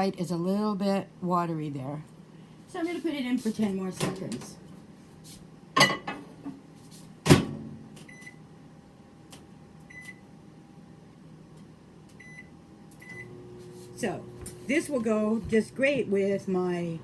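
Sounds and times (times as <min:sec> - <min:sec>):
microwave oven humming: 0:03.7 - 0:17.0.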